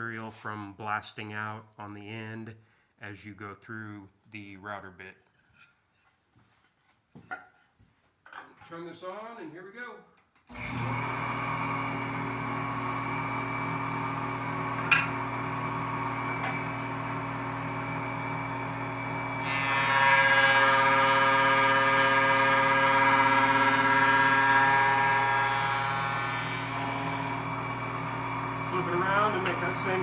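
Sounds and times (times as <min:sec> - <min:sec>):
wood shaper motor and cutting whine: 0:10.5 - 0:30.0.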